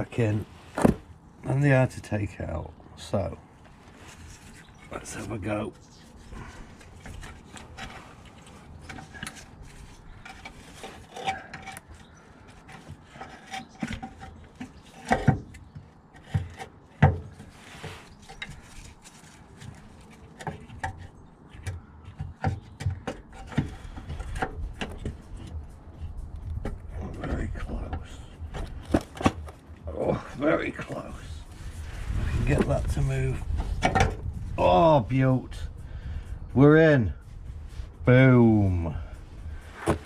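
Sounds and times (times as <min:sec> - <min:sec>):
heavy clunks: 0:00.7 - 0:01.1, 0:39.5 - 0:40.0
metal parts scraping and knocking: 0:05.9 - 0:29.8.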